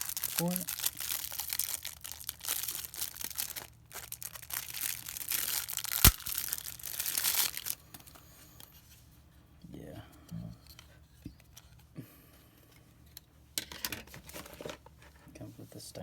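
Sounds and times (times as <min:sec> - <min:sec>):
packaging crinkling and tearing: 0:00.0 - 0:07.8.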